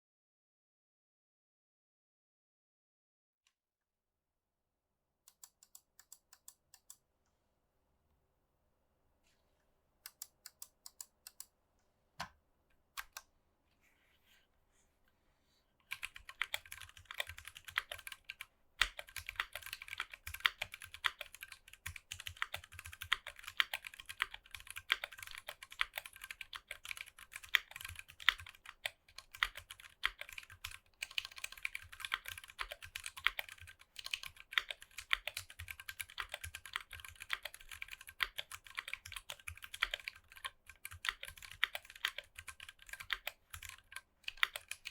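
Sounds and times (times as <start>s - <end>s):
typing on mechanical keyboard: 15.9s - 44.9s.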